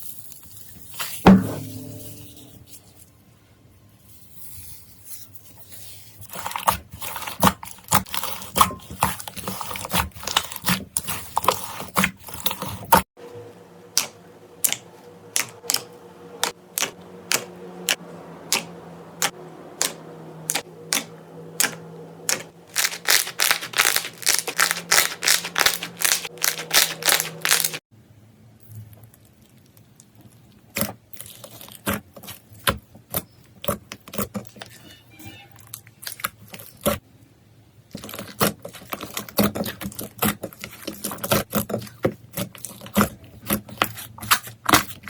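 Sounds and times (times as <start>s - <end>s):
slime clicking and crackling: 18.5s - 27.8s.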